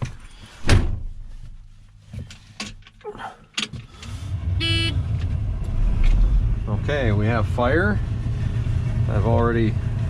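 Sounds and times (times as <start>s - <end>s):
diesel engine cranking and starting: 3.6s - 10.0s.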